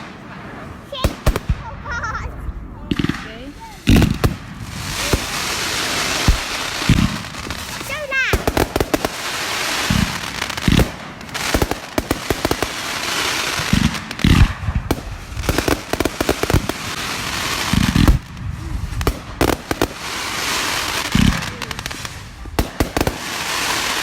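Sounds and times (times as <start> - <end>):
crackling hiss: 0.0 - 24.0
sharp firework bangs: 0.0 - 24.0
deep booming shell bursts: 1.1 - 7.6.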